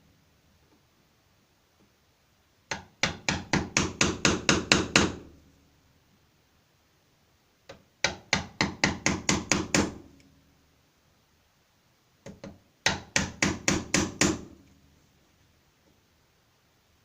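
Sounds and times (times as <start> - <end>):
hammer striking wood chisel: 2.7 - 5.3, 8.0 - 10.0, 12.3 - 14.6.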